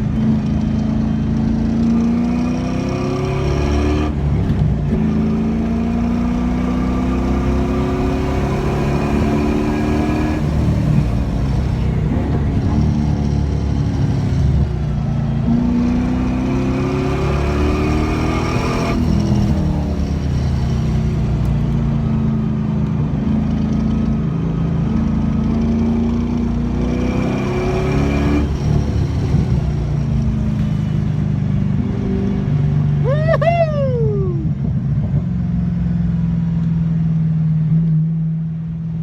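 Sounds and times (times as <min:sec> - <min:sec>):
car engine pulling hard: 0:00.0 - 0:37.0.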